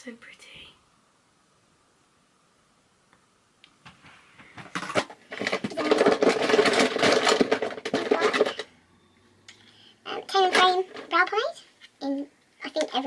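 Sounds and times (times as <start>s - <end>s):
crinkling packaging: 4.6s - 8.7s.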